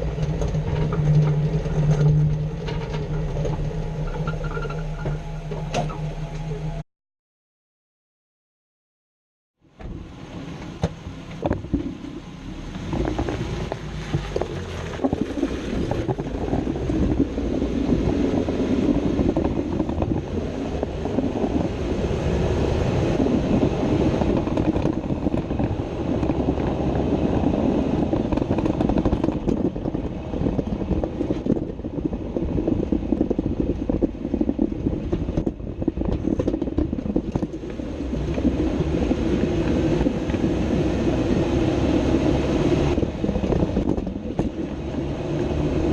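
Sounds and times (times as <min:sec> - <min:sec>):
tyres and driveline rumbling: 0:00.0 - 0:06.8, 0:09.7 - 0:45.9
wind on microphone: 0:11.4 - 0:45.9.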